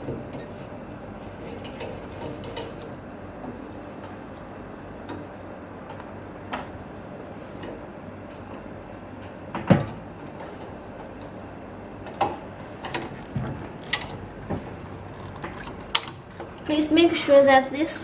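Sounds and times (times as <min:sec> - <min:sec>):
steady background hum: 0:00.0 - 0:18.0
equipment knocks and clicks: 0:09.5 - 0:11.2, 0:12.1 - 0:16.6.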